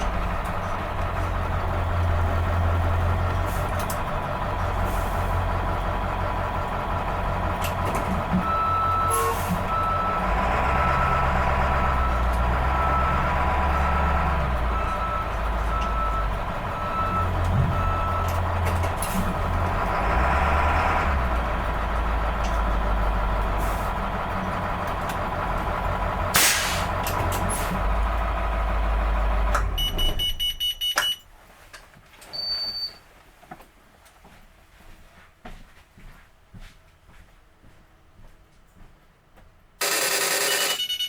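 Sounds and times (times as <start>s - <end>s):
diesel bus engine rumbling: 0.0s - 31.0s
reversing alarm beeping: 8.4s - 18.6s, 29.7s - 31.2s, 39.8s - 41.0s
air brake hiss: 26.4s - 27.7s.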